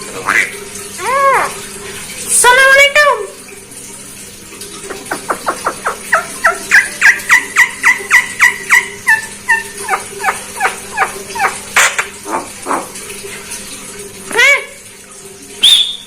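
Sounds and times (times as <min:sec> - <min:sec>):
myna yelping calls: 0:05.6 - 0:13.0.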